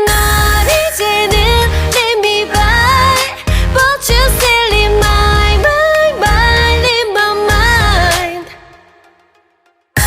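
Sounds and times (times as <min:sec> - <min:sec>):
steady bass beat: 0:00.0 - 0:06.9, 0:07.5 - 0:08.4
pop music with singing: 0:00.0 - 0:10.0.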